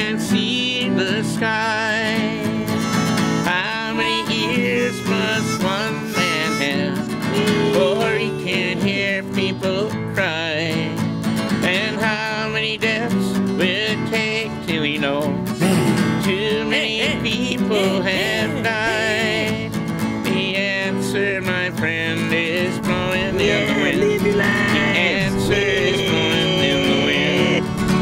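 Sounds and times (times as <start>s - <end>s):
acoustic guitar: 0.0s - 28.0s
country music: 0.0s - 28.0s
wavering lead melody: 2.7s - 8.6s.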